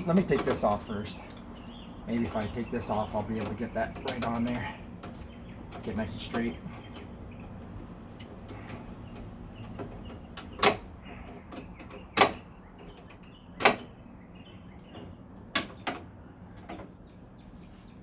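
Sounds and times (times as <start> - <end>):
hand tools clicking and knocking: 0.0 - 1.5, 2.2 - 13.9.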